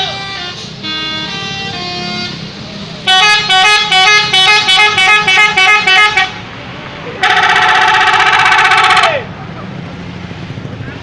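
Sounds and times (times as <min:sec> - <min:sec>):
musical bus air horn: 0:00.0 - 0:06.4, 0:07.2 - 0:09.2.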